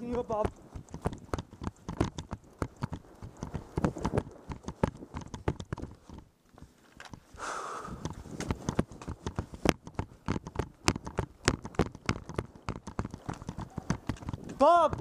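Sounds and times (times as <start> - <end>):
sharp clicks and knocks: 0.0 - 7.3, 7.9 - 15.0.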